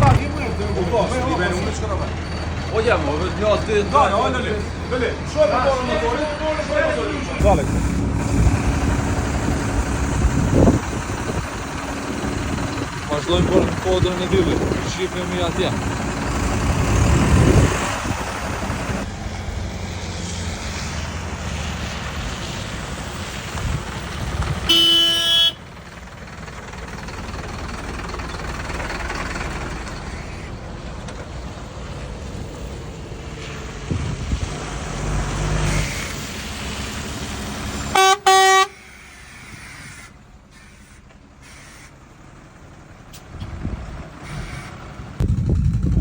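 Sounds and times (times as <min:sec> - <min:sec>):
atv engine rumbling: 0:00.0 - 0:46.0
wind: 0:00.0 - 0:46.0
vehicle horn honking: 0:24.7 - 0:25.7, 0:37.9 - 0:40.0.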